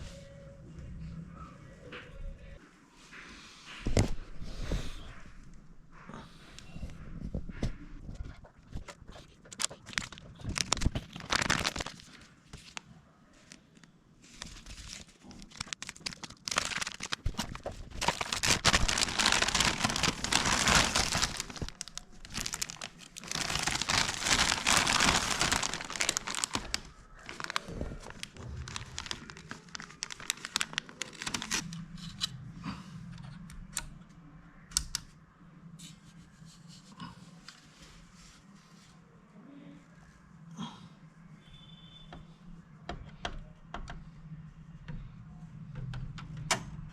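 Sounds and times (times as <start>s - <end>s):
faint low hum: 0.0s - 46.9s
packaging crinkling and rustling: 8.7s - 32.3s
packaging tearing: 9.6s - 12.1s, 14.5s - 31.8s.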